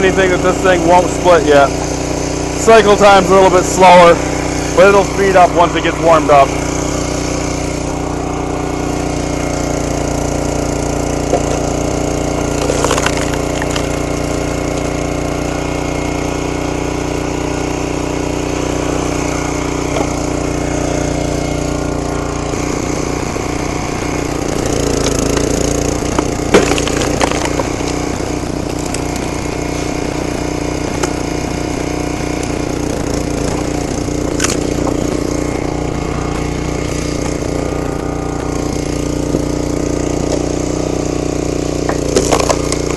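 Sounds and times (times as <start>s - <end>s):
log splitter engine running: 0.0s - 42.9s
wood cracking and splintering: 9.0s - 15.2s, 19.1s - 40.7s, 41.7s - 42.9s.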